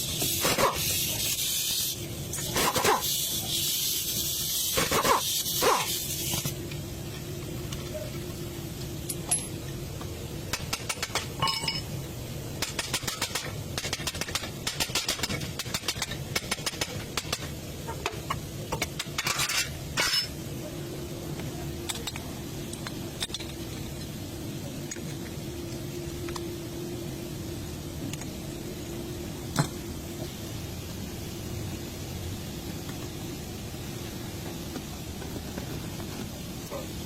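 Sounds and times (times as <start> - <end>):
low steady hum: 6.1 - 37.0
metal tools clinking and rattling: 9.0 - 9.7, 11.0 - 11.9, 18.9 - 20.4.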